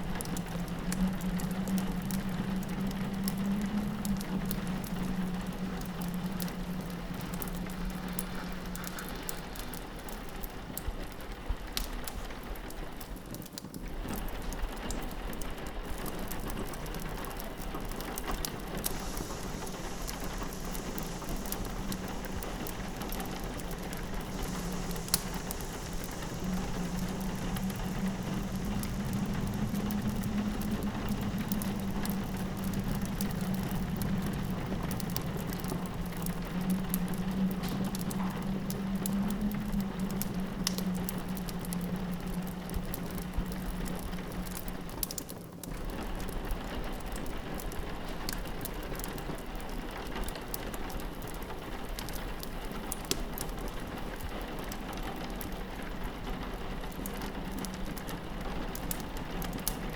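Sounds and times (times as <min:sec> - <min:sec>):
low wind drone: 0:00.0 - 0:10.8, 0:16.2 - 0:45.2
rain pattering on a window: 0:00.0 - 0:59.9
wood fire crackling: 0:00.0 - 0:59.9.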